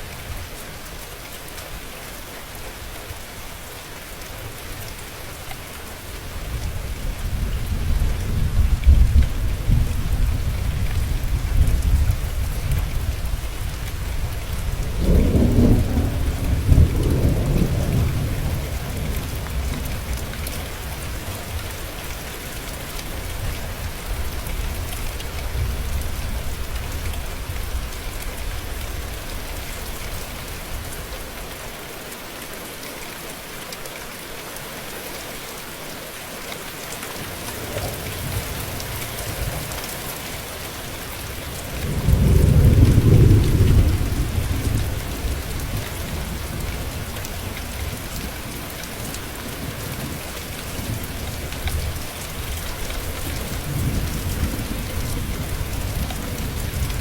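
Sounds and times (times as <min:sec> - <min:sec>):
steady rain hissing: 0:00.0 - 0:57.0
rolling thunder: 0:07.0 - 0:20.1, 0:41.7 - 0:47.1.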